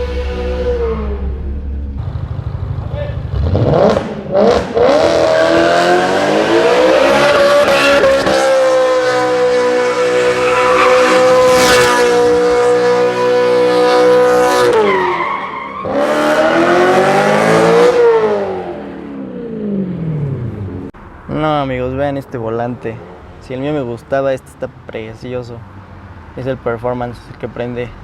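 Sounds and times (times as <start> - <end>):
engine at high revs: 3.3 - 14.9, 15.8 - 20.9
tyres squealing: 9.5 - 11.7.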